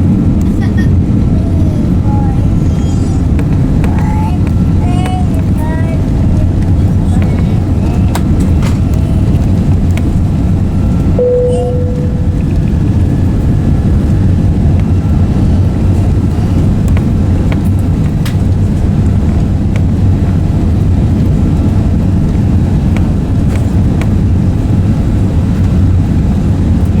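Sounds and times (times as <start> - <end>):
airplane cabin engine rumble: 0.0 - 27.0.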